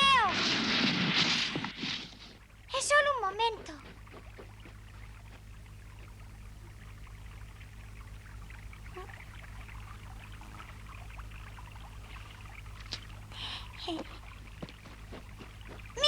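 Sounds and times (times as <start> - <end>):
faint low hum: 0.0 - 16.0
stream water trickling: 2.3 - 16.0.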